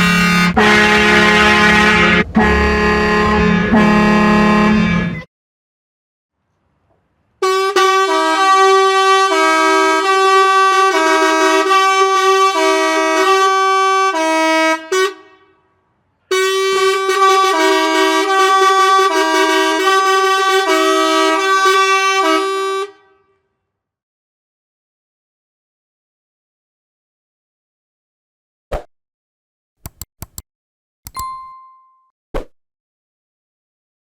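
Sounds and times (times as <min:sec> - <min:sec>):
two-tone truck air horn: 0:00.0 - 0:05.3, 0:07.4 - 0:23.5.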